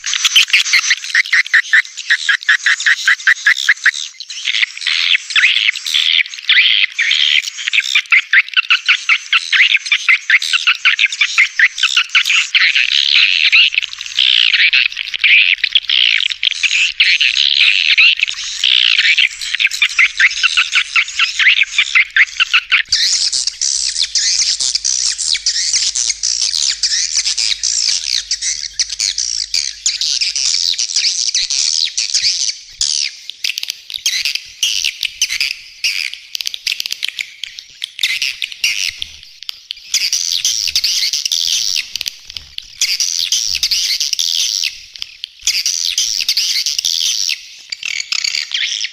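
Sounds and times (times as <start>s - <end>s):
swiftlets chattering and twittering: 12.2s - 39.0s.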